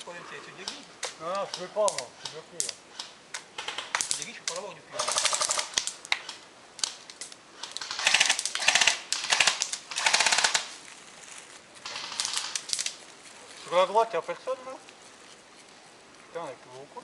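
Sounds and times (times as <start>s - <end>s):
airsoft gun firing bursts: 3.6s - 4.2s, 5.0s - 5.9s, 7.7s - 10.7s, 11.8s - 12.8s.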